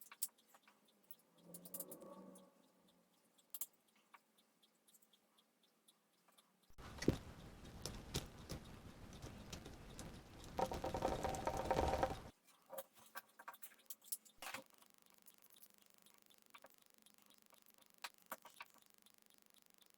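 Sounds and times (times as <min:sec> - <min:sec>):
plastic parts clicking and rattling: 0:10.2 - 0:14.7.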